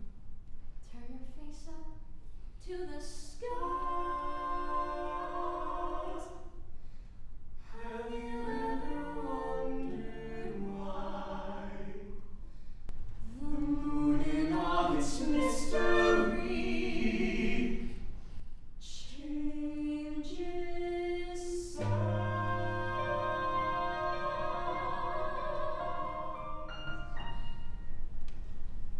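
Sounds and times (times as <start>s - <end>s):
voices singing in harmony: 3.0s - 6.6s, 7.7s - 12.4s, 13.2s - 18.1s, 18.9s - 27.4s
low accompanying note: 21.8s - 25.0s.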